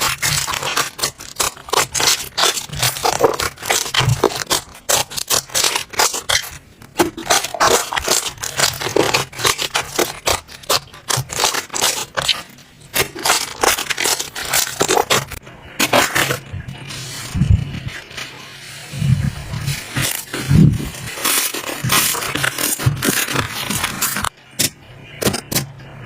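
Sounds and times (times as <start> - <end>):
slime crackling and popping: 0.0 - 16.7.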